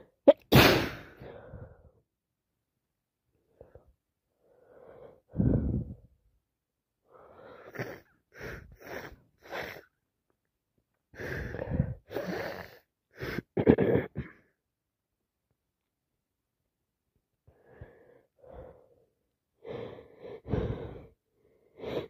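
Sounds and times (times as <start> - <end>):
person sneezing: 0.3 - 1.3
person sniffing: 0.5 - 1.3
wheezy gasping breaths: 4.4 - 6.1, 7.1 - 10.0, 11.1 - 13.6, 17.5 - 22.0.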